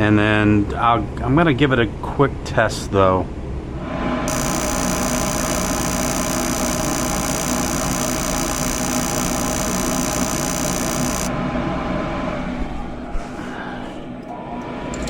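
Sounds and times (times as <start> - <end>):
furnace motor hum: 3.6 - 15.0
high-pitched motor whine: 4.2 - 11.4.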